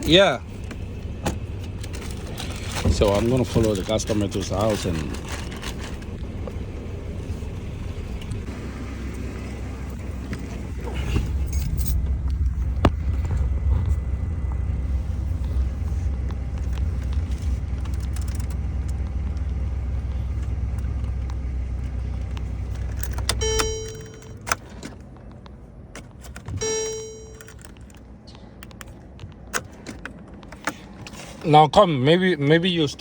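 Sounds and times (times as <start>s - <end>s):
car driving rumble: 0.0s - 33.0s
keys jingling: 11.4s - 12.1s, 22.7s - 24.7s, 26.3s - 28.0s
clicks: 22.3s - 24.6s, 25.4s - 30.7s
car warning chime: 23.3s - 24.6s, 26.6s - 27.8s.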